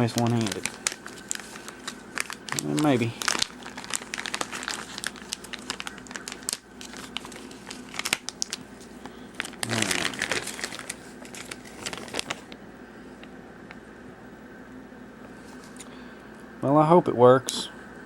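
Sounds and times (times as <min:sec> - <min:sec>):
packaging crinkling and rustling: 0:00.0 - 0:12.6.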